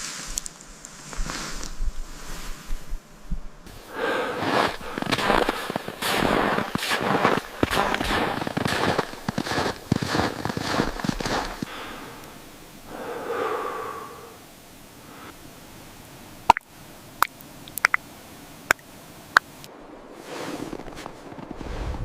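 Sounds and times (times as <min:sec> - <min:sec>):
soft hiss: 0:00.0 - 0:09.3, 0:11.5 - 0:22.0
sharp clicks or pops: 0:16.5 - 0:18.0.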